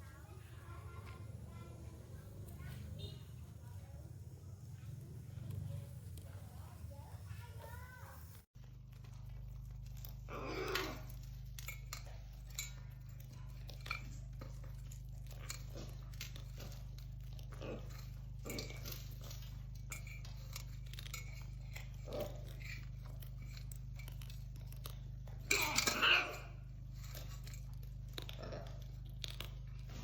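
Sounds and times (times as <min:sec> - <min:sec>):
chewing and crunching: 0:00.6 - 0:30.0.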